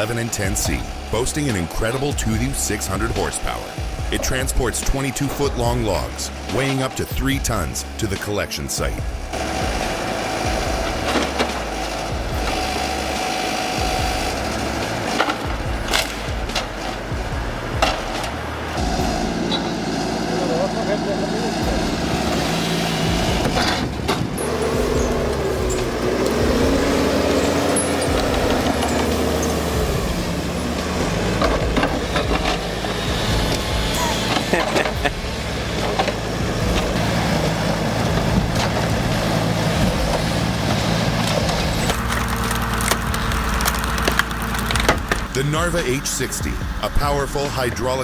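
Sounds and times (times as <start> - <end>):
heavy diesel engine revving: 0.0 - 48.0
scattered knocks: 8.8 - 20.2, 21.5 - 47.6.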